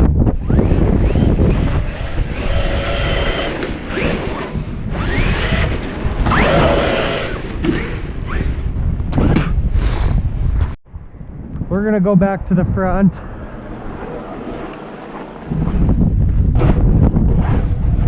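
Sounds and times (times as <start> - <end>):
wind buffeting microphone: 0.0 - 18.0
electric motors whining: 0.2 - 9.3, 13.2 - 15.9.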